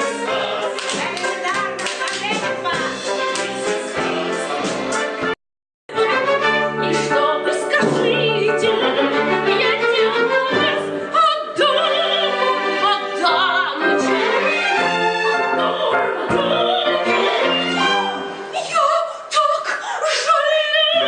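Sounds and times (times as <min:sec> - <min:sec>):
live orchestra: 0:02.4 - 0:18.6
operatic singer with vibrato: 0:06.0 - 0:21.0.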